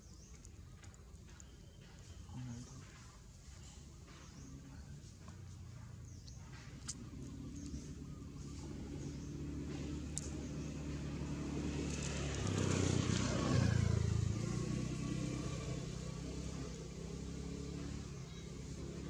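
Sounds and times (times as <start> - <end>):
vehicle engine running: 0.0 - 19.0.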